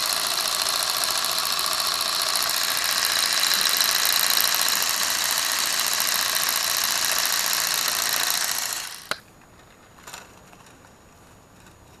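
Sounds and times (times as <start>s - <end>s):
toy car motor whirring: 0.0s - 9.2s
sharp click: 9.0s - 9.3s.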